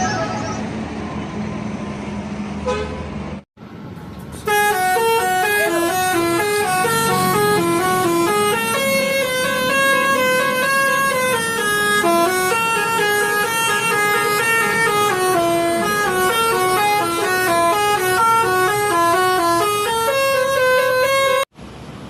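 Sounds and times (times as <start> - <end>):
air horn melody: 4.4 - 21.5.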